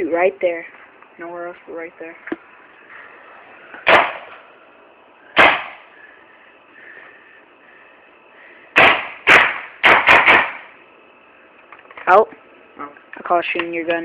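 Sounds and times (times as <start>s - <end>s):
paintball marker shots cracking: 3.8s - 4.4s, 5.4s - 5.8s, 8.8s - 10.6s.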